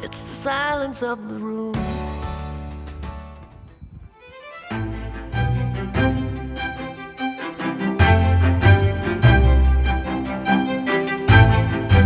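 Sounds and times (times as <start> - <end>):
bowed strings: 4.3 - 12.0
bass line: 4.7 - 7.0, 8.0 - 12.0.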